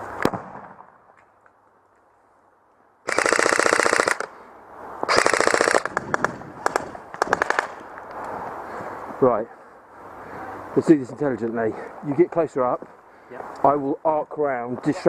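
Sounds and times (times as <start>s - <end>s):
airsoft gun firing: 3.1s - 4.3s, 5.1s - 7.8s.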